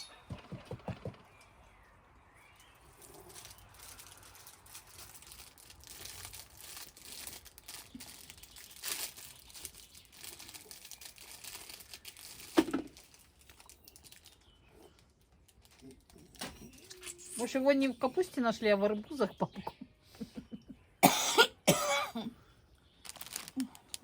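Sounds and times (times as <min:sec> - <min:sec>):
plastic wrapping crinkling: 0:02.5 - 0:17.5, 0:23.0 - 0:24.0.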